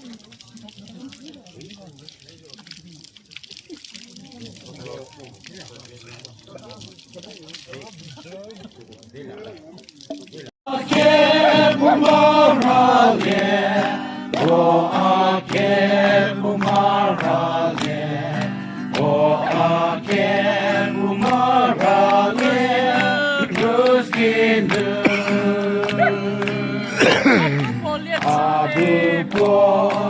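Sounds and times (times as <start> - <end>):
group of voices singing: 10.7 - 30.0.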